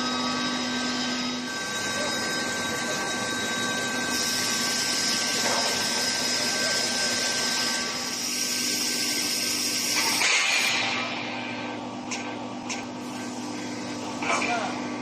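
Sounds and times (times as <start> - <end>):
high-pitched whine: 0.0 - 15.0
machine whining tones: 0.0 - 15.0.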